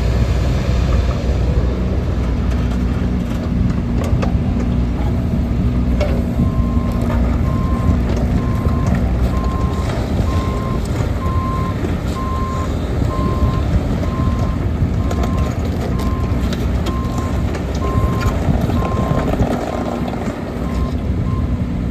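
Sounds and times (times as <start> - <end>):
diesel engine low rumble: 0.0 - 21.9
travel alarm beeping: 6.4 - 16.3.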